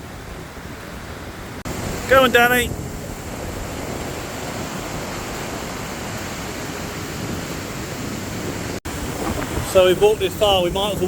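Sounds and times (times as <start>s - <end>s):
sea surf breaking on beach: 0.0s - 11.0s
wind on microphone: 0.0s - 11.0s.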